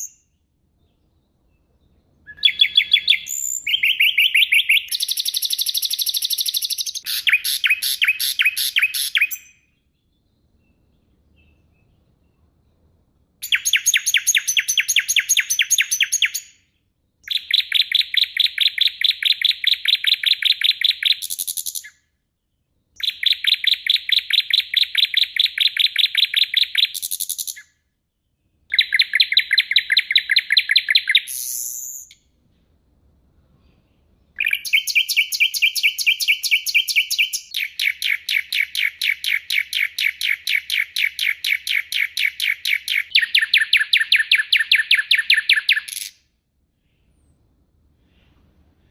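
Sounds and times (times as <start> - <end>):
songbird singing rapid high notes: 2.3 - 9.6, 34.4 - 46.1.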